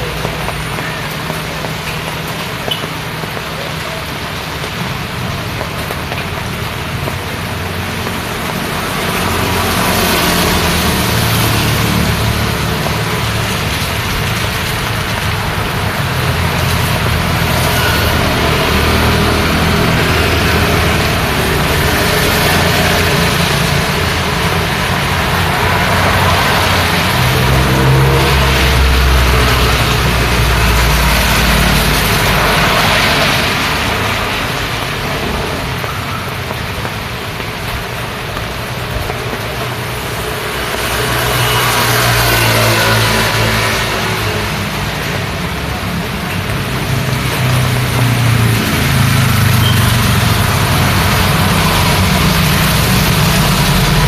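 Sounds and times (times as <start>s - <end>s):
rain and wet tyres hissing: 0.0s - 54.0s
vehicles passing: 0.0s - 54.0s.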